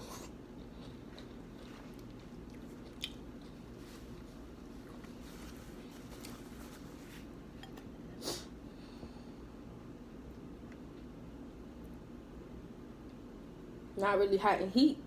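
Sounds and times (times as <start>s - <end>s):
soft chewing: 0.0s - 7.9s
steady low hum: 0.0s - 15.0s.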